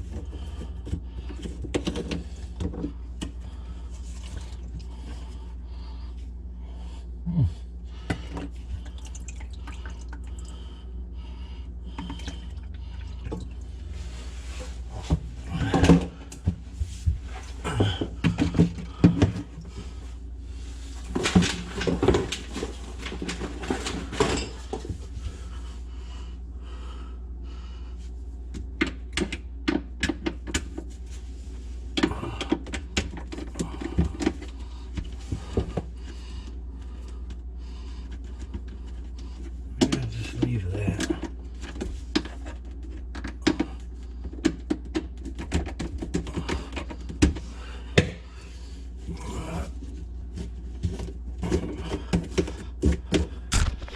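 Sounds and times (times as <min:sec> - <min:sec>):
knocks and clatter of drain pipes: 0:00.0 - 0:03.4, 0:15.0 - 0:19.9, 0:32.0 - 0:36.3, 0:38.3 - 0:48.3, 0:50.3 - 0:53.9
steady low hum: 0:00.0 - 0:53.9.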